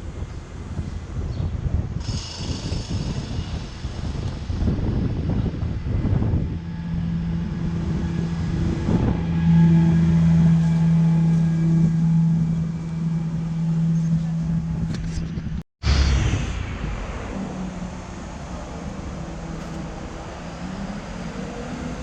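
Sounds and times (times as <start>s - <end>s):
low engine hum: 0.0s - 22.0s
wind buffeting microphone: 0.0s - 22.0s.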